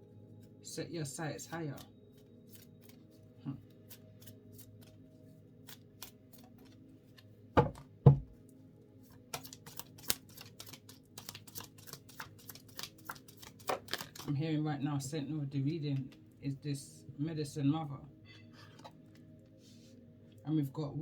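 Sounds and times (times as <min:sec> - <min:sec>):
cards shuffling: 0:05.6 - 0:07.2, 0:09.1 - 0:14.3
cards clicking: 0:09.3 - 0:14.3.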